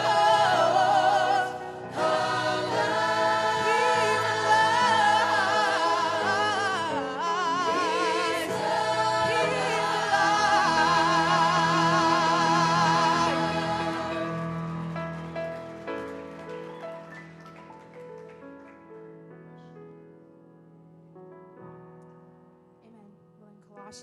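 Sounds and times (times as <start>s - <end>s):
gospel choir singing: 0.0s - 15.8s.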